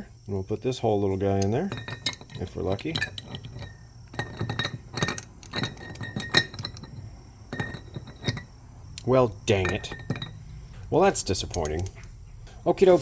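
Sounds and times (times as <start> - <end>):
metal parts and glass clinking: 1.2 - 10.6, 11.2 - 12.0.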